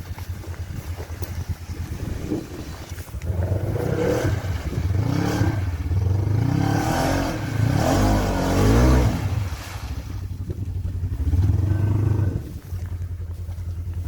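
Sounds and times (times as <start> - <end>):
engine revving under load: 1.8 - 10.2, 10.8 - 12.8.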